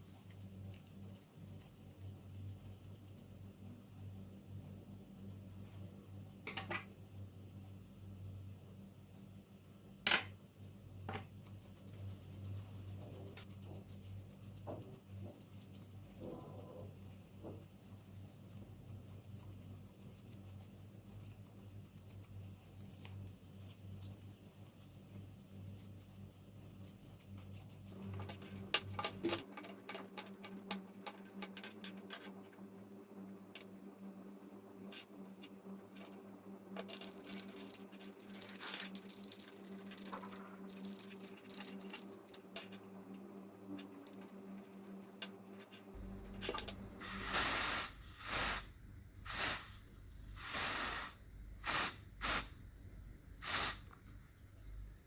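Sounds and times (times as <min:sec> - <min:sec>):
low steady hum: 0:00.0 - 0:55.0
small parts clicking and tapping: 0:28.0 - 0:32.6, 0:36.8 - 0:46.8.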